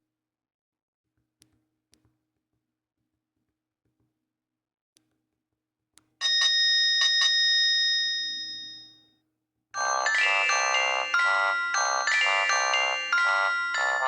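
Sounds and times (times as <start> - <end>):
bell-like phone ringtone chime: 9.8 - 14.0
busy ringtone melody: 9.8 - 14.0.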